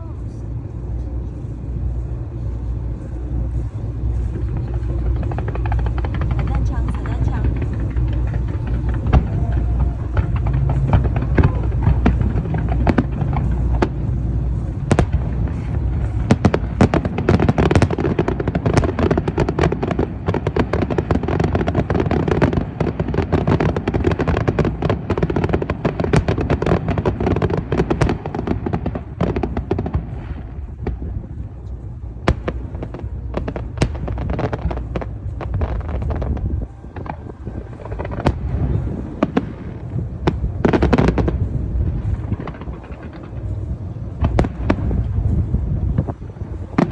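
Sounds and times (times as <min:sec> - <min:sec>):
fireworks bangs and crackles: 0:00.0 - 0:46.9
low rumble: 0:00.0 - 0:46.9.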